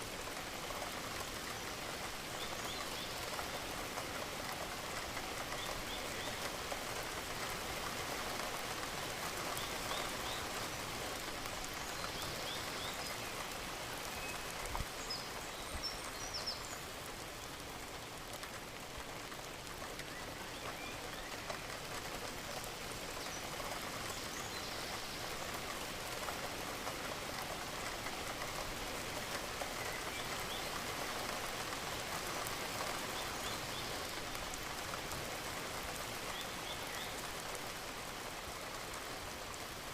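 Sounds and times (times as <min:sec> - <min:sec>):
steady rain pattering: 0:00.0 - 0:39.9.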